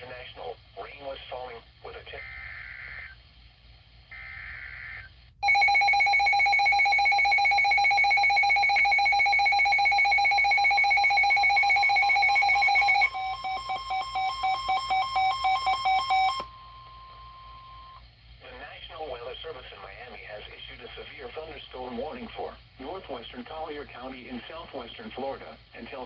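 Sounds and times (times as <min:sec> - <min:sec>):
fast pulsing beeps: 0:05.4 - 0:16.4.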